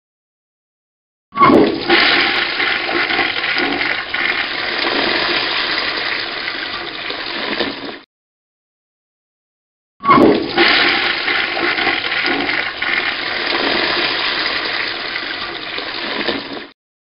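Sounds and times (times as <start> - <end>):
toilet flushing: 1.7 - 8.0, 10.4 - 16.8.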